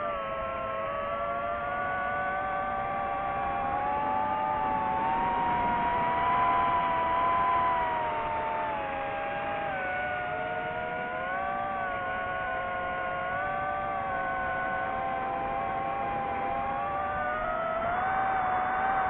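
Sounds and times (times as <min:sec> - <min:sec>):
drone propellers whining: 0:00.1 - 0:19.0.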